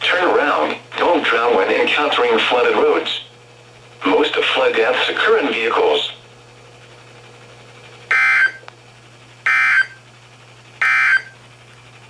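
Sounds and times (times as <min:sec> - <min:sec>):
low steady hum: 0:00.0 - 0:12.0
buzzy data bursts: 0:08.1 - 0:08.6, 0:09.4 - 0:10.0, 0:10.8 - 0:11.4.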